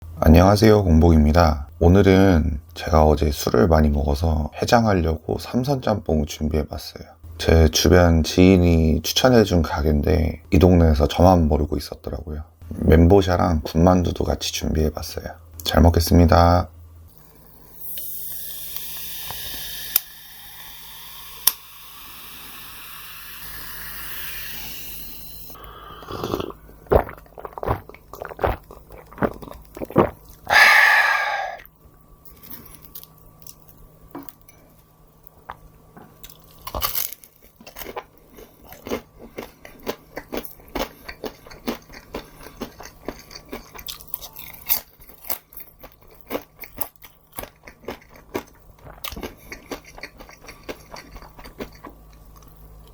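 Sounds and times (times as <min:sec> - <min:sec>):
steady hiss: 0:17.6 - 0:26.4
chewing with crunches: 0:25.5 - 0:30.6, 0:35.4 - 0:52.9.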